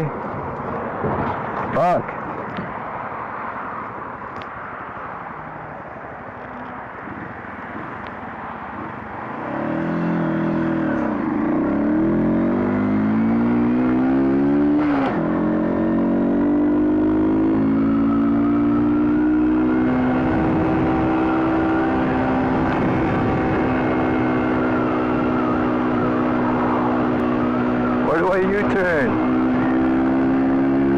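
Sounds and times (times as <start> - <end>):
motorcycle engine revving: 9.4 - 30.9.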